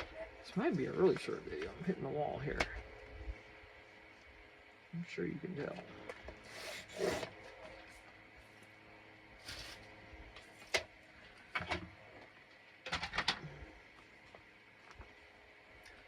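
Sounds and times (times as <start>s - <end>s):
paper being cut: 6.5s - 7.3s.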